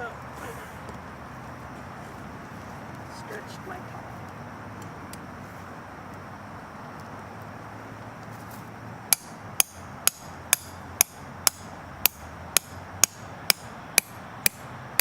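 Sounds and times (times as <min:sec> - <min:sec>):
hammer striking tent stake: 0:09.1 - 0:15.0.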